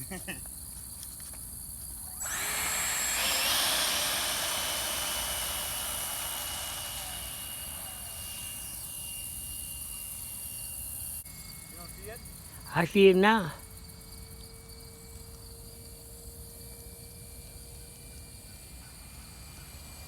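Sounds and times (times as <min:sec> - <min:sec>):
jet model fans whining: 0:02.2 - 0:12.4.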